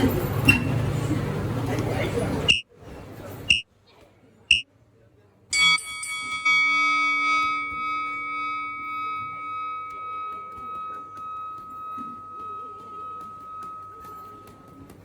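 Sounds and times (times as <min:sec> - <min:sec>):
bell ringing: 0:05.6 - 0:15.0.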